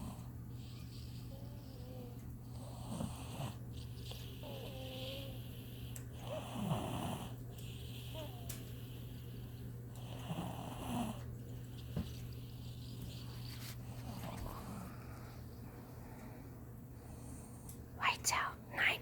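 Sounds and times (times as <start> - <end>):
snoring: 0.0 - 13.3.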